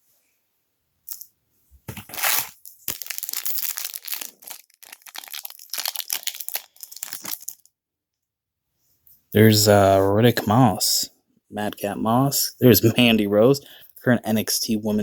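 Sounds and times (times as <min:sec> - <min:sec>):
foil wrapper tearing and crinkling: 0:01.9 - 0:07.7.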